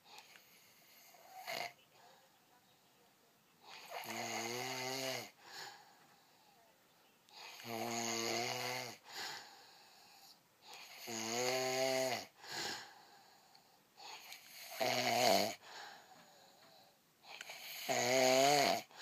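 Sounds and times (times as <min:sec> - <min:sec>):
loud buzzing snores: 0:00.1 - 0:01.8, 0:03.7 - 0:05.7, 0:07.4 - 0:12.9, 0:14.0 - 0:15.6, 0:17.3 - 0:19.0
faint breath: 0:01.9 - 0:02.5, 0:05.3 - 0:07.6, 0:09.0 - 0:11.0, 0:12.3 - 0:14.6, 0:15.6 - 0:17.6.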